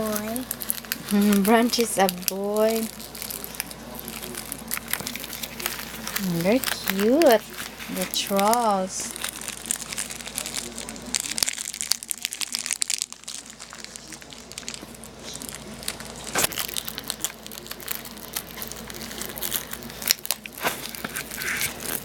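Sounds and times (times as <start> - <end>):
plastic packaging crackling: 0.0 - 22.0.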